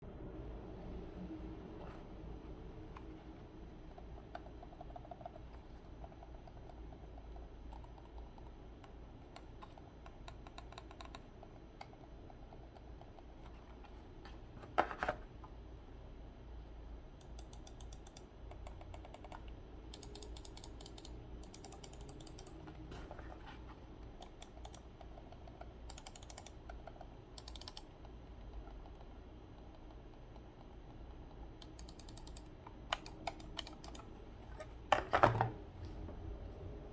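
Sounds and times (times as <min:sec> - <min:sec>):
mouse buttons clicking: 0:31.6 - 0:34.1.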